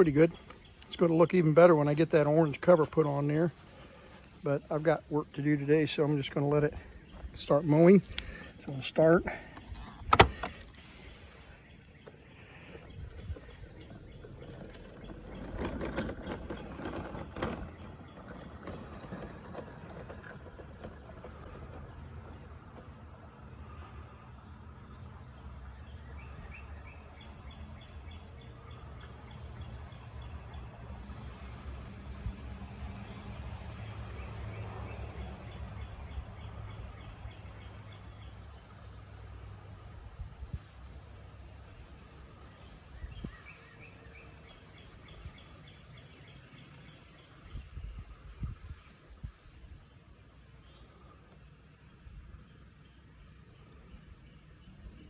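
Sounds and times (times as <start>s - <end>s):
bird chirping: 0.0s - 22.9s, 23.6s - 31.6s, 41.7s - 49.4s
clicks and rustles: 5.3s - 23.5s
robotic mower motor hum: 5.7s - 34.0s.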